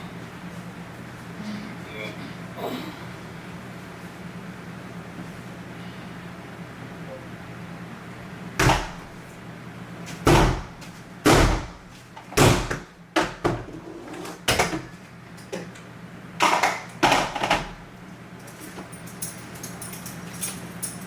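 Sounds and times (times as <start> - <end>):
loud bangs and slams: 10.3 - 10.7, 11.3 - 11.8.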